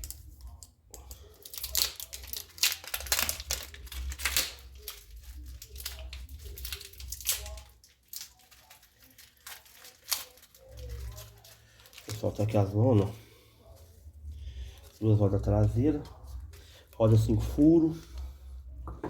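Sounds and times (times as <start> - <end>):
packaging crinkling and tearing: 0.0 - 13.1.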